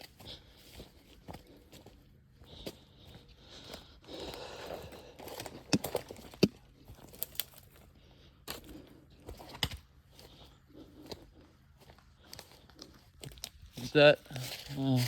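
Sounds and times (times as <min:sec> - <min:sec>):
footsteps crunching through dry leaves: 0:00.0 - 0:15.0
twigs snapping and crackling: 0:05.2 - 0:07.8, 0:12.3 - 0:15.0.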